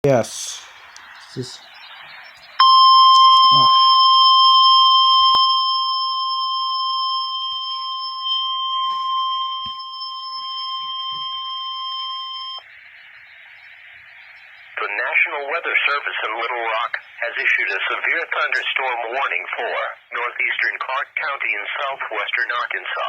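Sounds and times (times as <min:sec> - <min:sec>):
radio static hiss: 0:00.0 - 0:23.0
steady alarm tone: 0:02.6 - 0:13.2.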